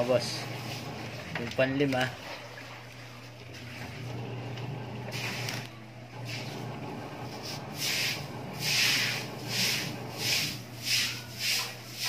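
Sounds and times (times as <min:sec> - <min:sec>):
short rubbing or scraping strokes: 0:06.2 - 0:06.6, 0:07.2 - 0:12.0.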